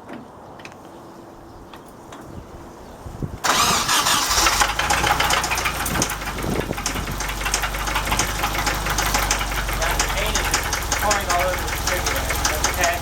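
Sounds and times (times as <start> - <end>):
engine cranking and starting: 3.4 - 13.0
engine idling with ticking knock: 3.5 - 13.0.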